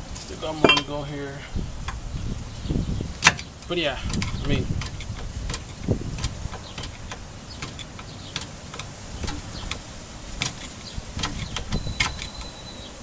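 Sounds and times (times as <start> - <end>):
light metal clicks: 3.2 - 12.9.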